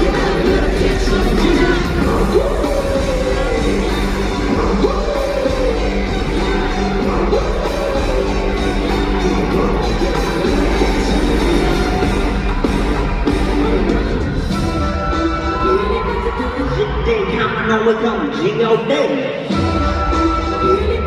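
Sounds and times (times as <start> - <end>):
heavy bass line: 0.0 - 16.9
loud live concert music: 0.0 - 21.0
singing and shouted vocals: 0.0 - 21.0.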